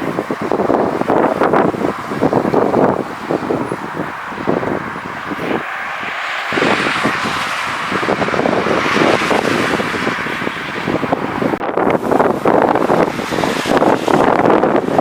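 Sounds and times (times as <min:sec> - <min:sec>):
jet engine rushing: 0:00.0 - 0:15.0
wind buffeting microphone: 0:00.0 - 0:15.0.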